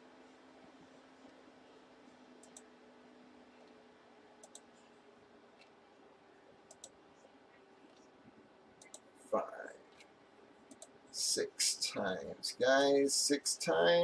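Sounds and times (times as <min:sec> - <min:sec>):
faint steady hum: 0:00.0 - 0:14.0
computer mouse clicks: 0:02.4 - 0:02.7, 0:04.4 - 0:04.8, 0:06.7 - 0:08.1, 0:08.8 - 0:09.1, 0:10.7 - 0:11.0.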